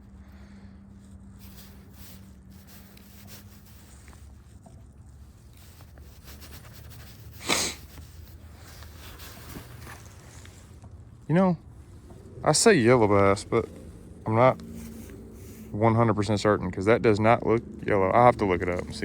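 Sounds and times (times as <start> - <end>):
sharp sniff: 1.4 - 4.3, 5.6 - 10.5.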